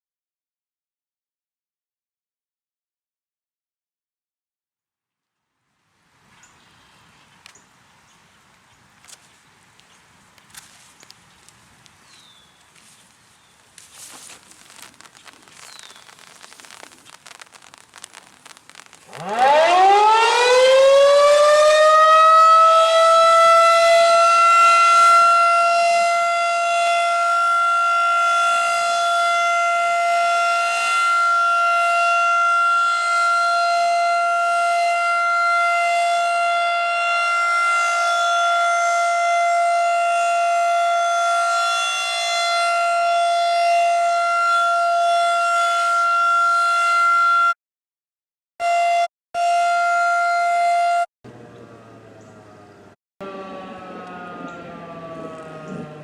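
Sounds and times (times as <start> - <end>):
tornado warning siren: 13.8 - 47.6, 48.6 - 56.0.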